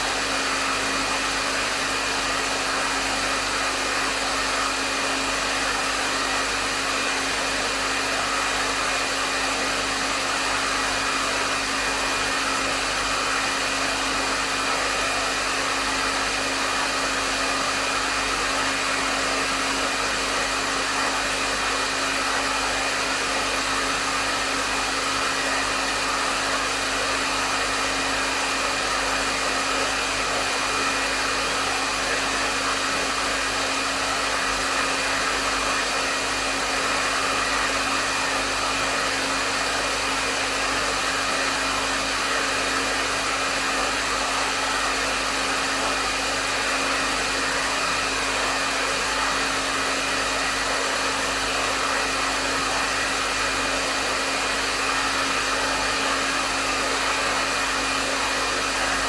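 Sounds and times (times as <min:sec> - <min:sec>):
hair dryer running: 0:00.0 - 0:59.0.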